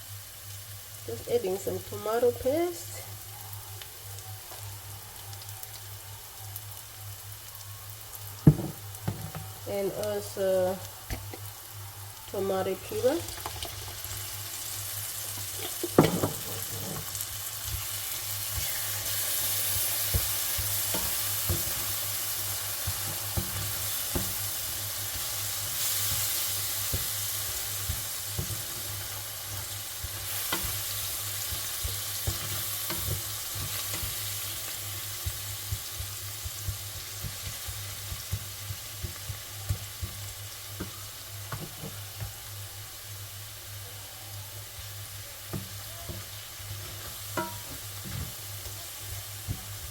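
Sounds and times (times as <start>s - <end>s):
food sizzling in a pan: 0.0s - 49.9s
spoon knocking and scraping a pan: 8.5s - 9.6s, 15.3s - 42.6s, 44.8s - 49.9s.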